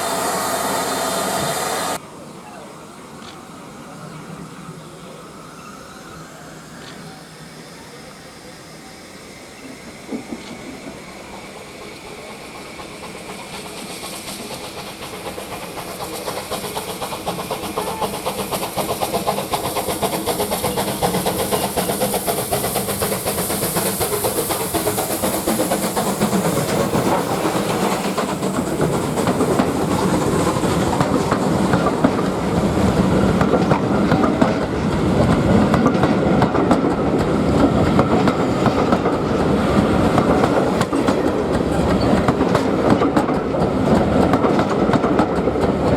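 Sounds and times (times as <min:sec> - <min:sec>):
steam train approaching: 0:00.0 - 0:45.9
steam train hissing: 0:00.0 - 0:45.9
wheels clattering over rail joints: 0:14.4 - 0:45.9.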